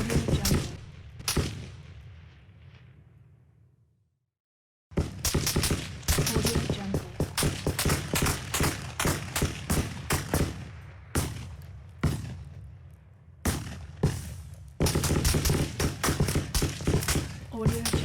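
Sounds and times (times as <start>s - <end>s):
rapid gunfire: 0.0s - 1.8s, 4.9s - 12.4s, 13.5s - 18.0s.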